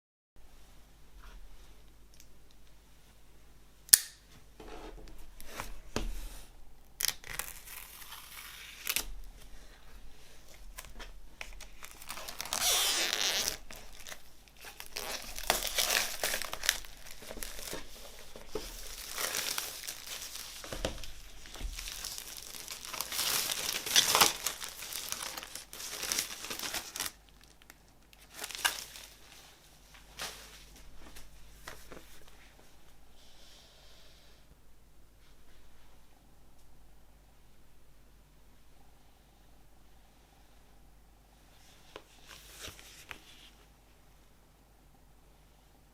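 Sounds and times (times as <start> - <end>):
packaging crinkling and tearing: 7.0 - 9.2, 10.7 - 29.3.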